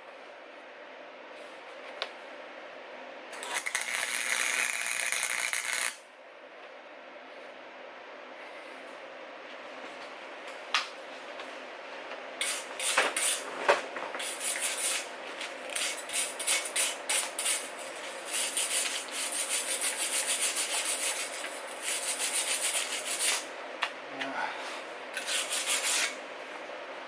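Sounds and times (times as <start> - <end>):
electric welding arc crackling: 3.4 - 6.0.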